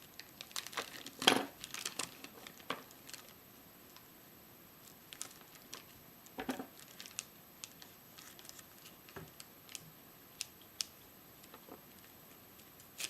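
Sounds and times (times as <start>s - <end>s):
packaging crinkling and clicking: 0.2s - 3.4s, 5.1s - 5.9s, 6.5s - 9.8s.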